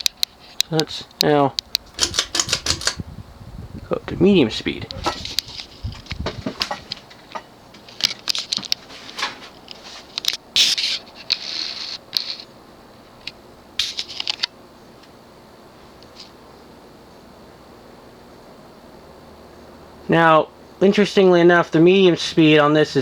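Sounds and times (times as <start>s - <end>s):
ceiling fan motor hiss: 0.0s - 23.0s
pull chain clicks and rattles: 1.6s - 3.0s.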